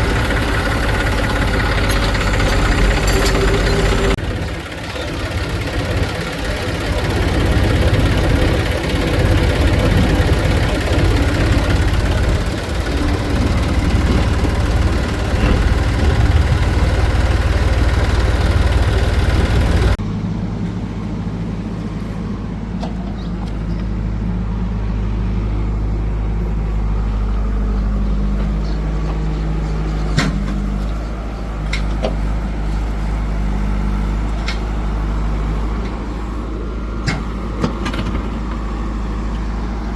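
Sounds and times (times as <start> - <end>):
diesel farm machinery running: 0.0 - 39.9.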